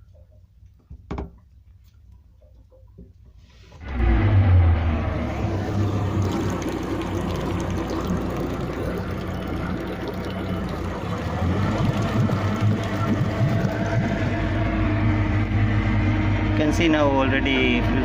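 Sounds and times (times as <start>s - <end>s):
water churning: 3.8s - 15.8s
outboard motor running: 3.8s - 18.0s.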